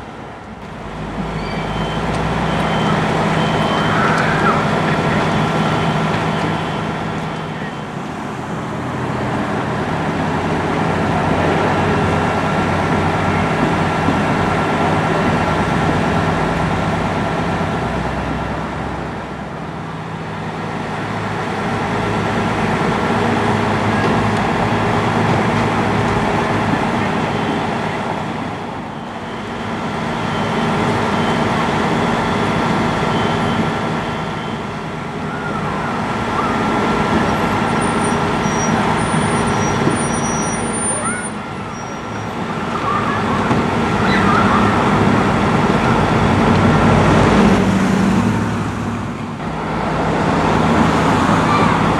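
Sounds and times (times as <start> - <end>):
fire engine driving: 0.0 - 51.9
siren: 1.7 - 8.0, 33.0 - 45.2.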